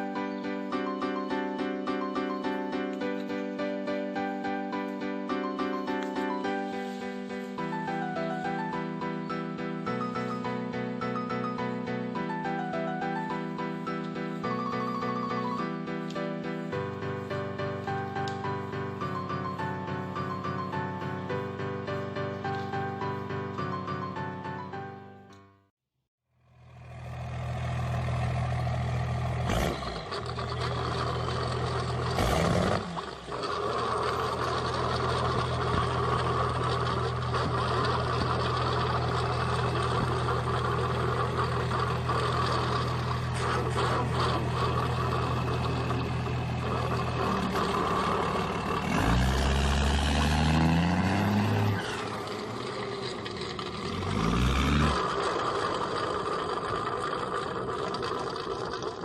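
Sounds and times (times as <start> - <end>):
diesel engine idling and revving: 26.4 - 59.0.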